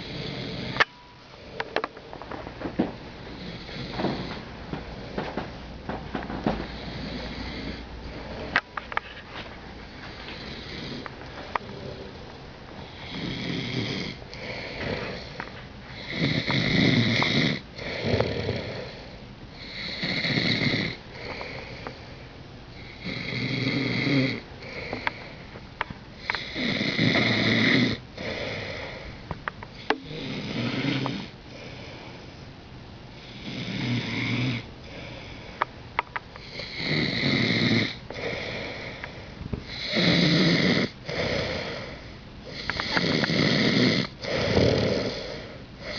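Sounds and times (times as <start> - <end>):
person snoring: 0.0 - 0.8, 12.8 - 22.0, 22.8 - 25.4, 26.2 - 29.1, 29.8 - 32.1, 33.2 - 35.4, 36.4 - 45.9
quiet breathing: 0.0 - 5.5, 6.4 - 23.7, 24.3 - 37.0, 37.9 - 40.1, 40.8 - 45.9.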